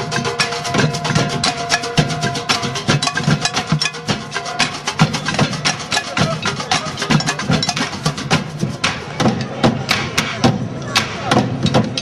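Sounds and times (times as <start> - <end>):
rapid clacking percussion: 0.0 - 12.0.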